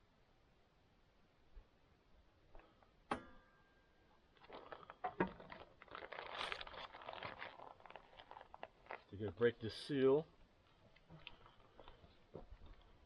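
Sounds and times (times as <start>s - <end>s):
crackling and rustling pouch: 4.2s - 10.0s, 10.6s - 13.0s.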